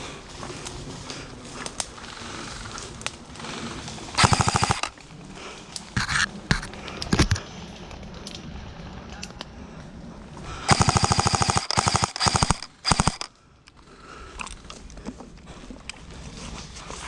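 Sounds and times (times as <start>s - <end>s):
airsoft gun firing: 4.2s - 4.9s, 10.7s - 13.3s.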